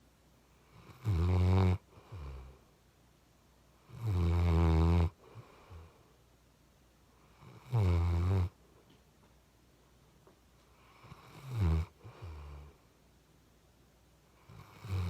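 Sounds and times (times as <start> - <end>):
puppy snoring: 0.6 - 2.6, 3.8 - 6.0, 7.2 - 8.6, 10.7 - 12.8, 14.4 - 15.0.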